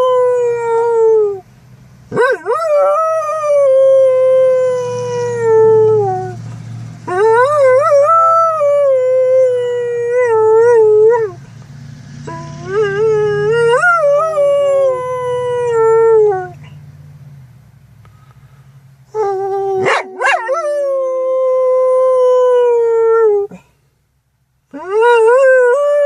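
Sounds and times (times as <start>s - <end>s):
truck cab hum: 0.0s - 26.0s
dog howling: 2.2s - 6.4s.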